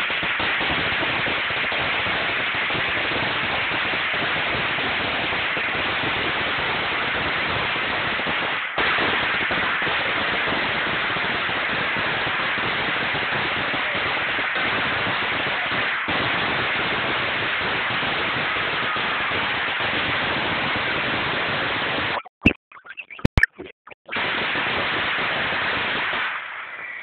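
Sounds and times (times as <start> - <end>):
firecrackers crackling: 0.0 - 22.2, 24.1 - 27.0
sharp firecracker bangs: 0.0 - 22.2, 24.1 - 27.0.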